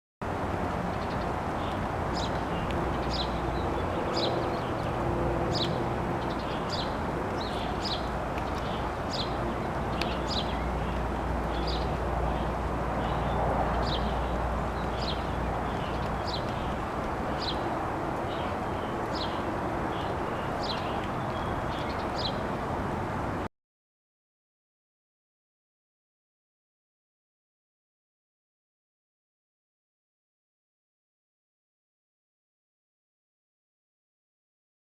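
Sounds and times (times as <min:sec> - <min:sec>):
distant traffic rumble: 0:00.2 - 0:23.5
songbird chirping: 0:00.9 - 0:22.6.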